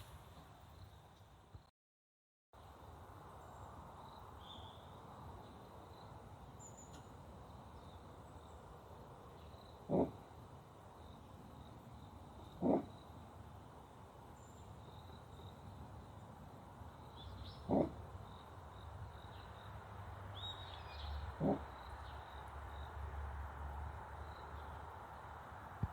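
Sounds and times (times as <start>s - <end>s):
loud animal calls: 9.9s - 10.2s, 12.5s - 13.0s, 17.6s - 18.1s, 21.3s - 21.8s.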